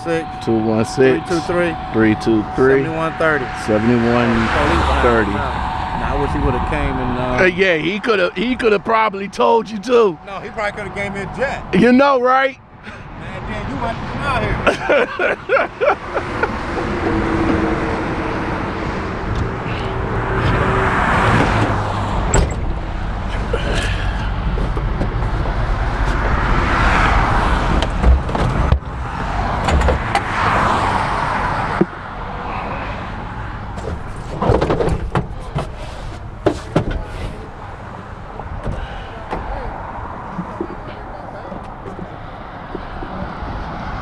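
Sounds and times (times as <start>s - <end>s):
low engine rumble: 0.0s - 12.0s, 12.6s - 30.1s
road traffic passing: 0.0s - 44.0s.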